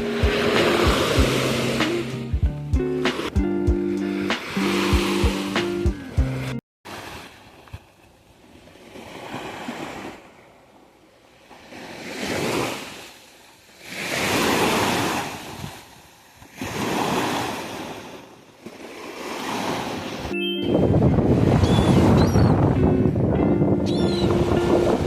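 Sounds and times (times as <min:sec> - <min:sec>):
waves breaking on beach: 0:00.0 - 0:02.3, 0:03.0 - 0:03.4, 0:04.1 - 0:06.2, 0:06.9 - 0:20.4.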